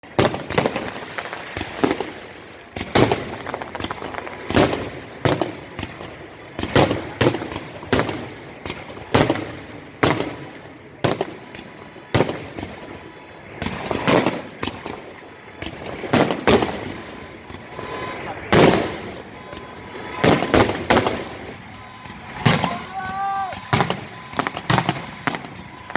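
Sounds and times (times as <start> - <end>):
fireworks shells bursting: 10.1 - 25.9.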